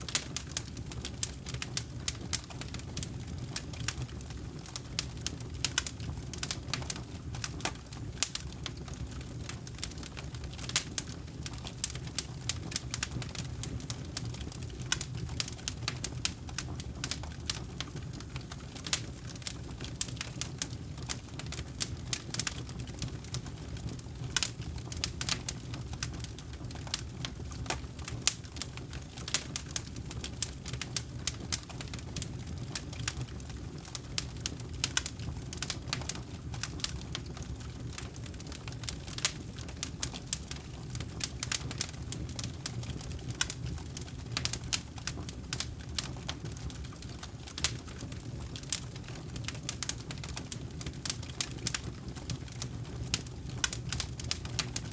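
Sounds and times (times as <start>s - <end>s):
low rumble of flames: 0.0s - 54.9s
campfire pops and snaps: 0.1s - 54.9s.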